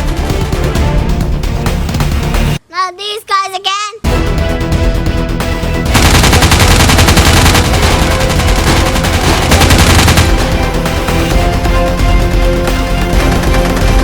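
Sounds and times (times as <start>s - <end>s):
background music: 0.0s - 2.7s, 4.0s - 14.0s
rapid-fire shooting: 5.9s - 11.5s, 13.0s - 14.0s.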